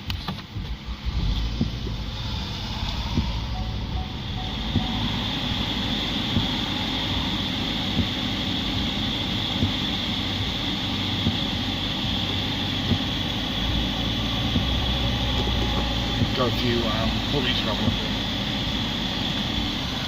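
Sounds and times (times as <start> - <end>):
car engine idling: 0.0 - 20.0
high-pitched squeal: 0.8 - 9.5, 13.4 - 20.0.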